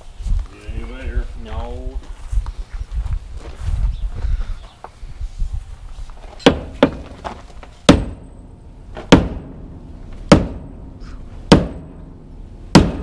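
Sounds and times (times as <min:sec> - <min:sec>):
sledgehammer striking metal wheel: 0:07.8 - 0:13.0.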